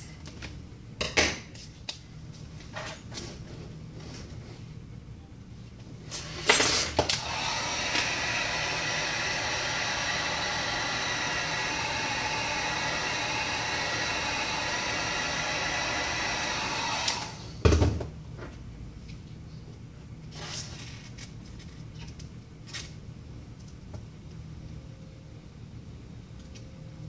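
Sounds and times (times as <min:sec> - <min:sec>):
heat gun fan whine: 0:05.8 - 0:18.5.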